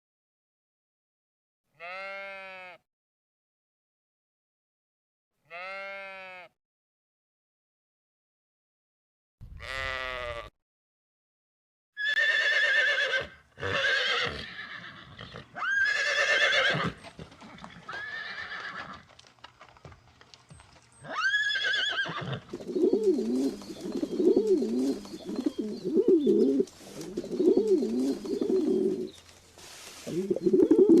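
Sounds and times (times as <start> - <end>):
horse whinnying: 12.0 - 19.1, 21.0 - 22.5.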